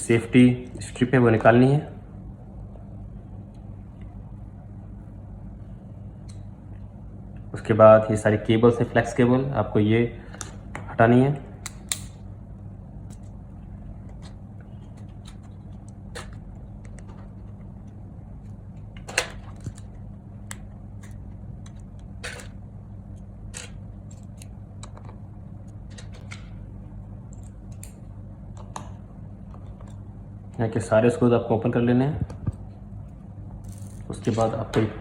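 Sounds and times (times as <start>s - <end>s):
steady low hum: 0.0s - 35.0s
small sharp connector clicks: 11.6s - 12.2s.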